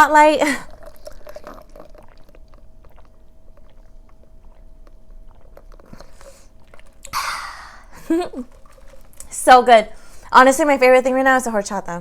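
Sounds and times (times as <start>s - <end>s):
chewing mouth clicks and smacks: 0.6s - 7.2s, 8.3s - 9.4s.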